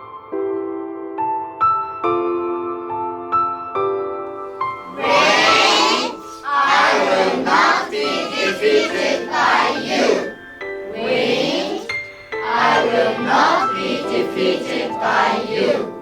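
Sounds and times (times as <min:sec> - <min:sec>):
soft piano notes: 0:00.0 - 0:16.0
chorus of voices: 0:04.8 - 0:16.0.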